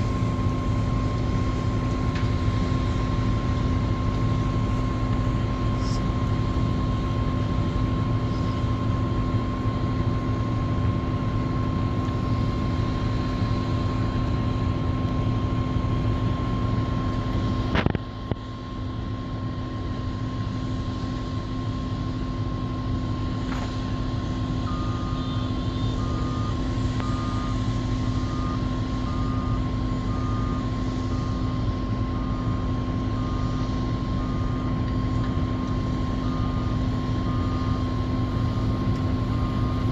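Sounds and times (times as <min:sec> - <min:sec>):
excavator engine and hydraulic drone: 0:00.0 - 0:39.9.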